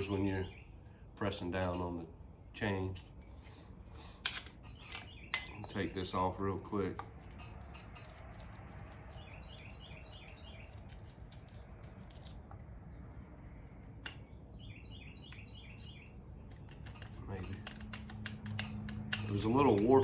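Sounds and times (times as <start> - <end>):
songbird trilling: 4.7 - 5.8, 14.2 - 16.8.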